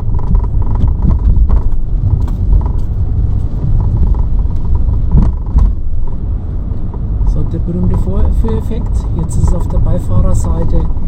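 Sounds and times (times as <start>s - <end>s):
short knocks and clicks: 0.0s - 7.1s
tyres and suspension rumbling: 0.0s - 11.0s.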